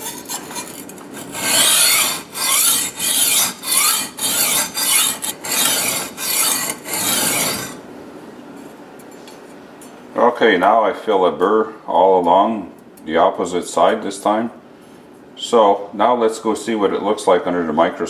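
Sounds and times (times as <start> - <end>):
knife scraping on sharpening plate: 0.0 - 7.8.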